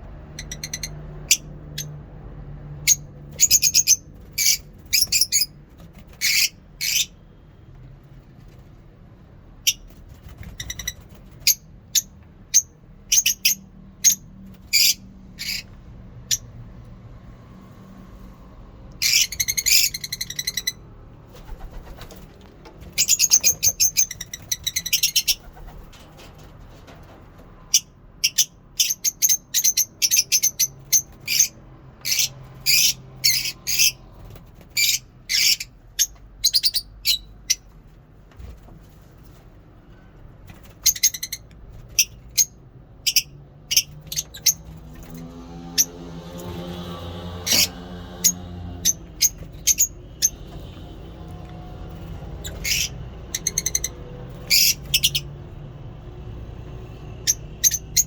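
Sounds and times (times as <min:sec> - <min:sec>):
lovebirds chattering: 0:00.3 - 0:01.9, 0:02.9 - 0:07.2, 0:09.6 - 0:15.7, 0:22.9 - 0:25.8, 0:27.7 - 0:34.0, 0:47.5 - 0:50.4, 0:52.2 - 0:55.3, 0:57.2 - 0:58.0.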